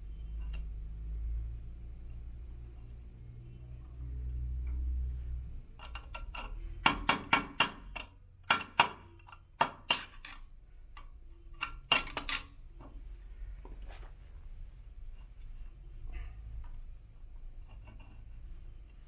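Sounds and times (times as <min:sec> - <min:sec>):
hammer tapping on metal: 0:06.2 - 0:10.3.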